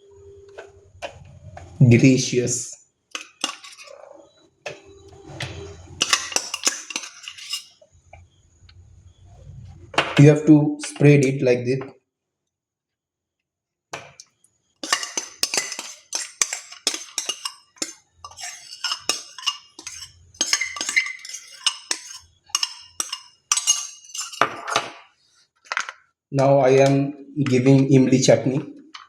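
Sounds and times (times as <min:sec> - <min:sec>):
spoon scraping a steel plate: 0:03.1 - 0:04.0, 0:05.5 - 0:07.8, 0:14.8 - 0:24.8.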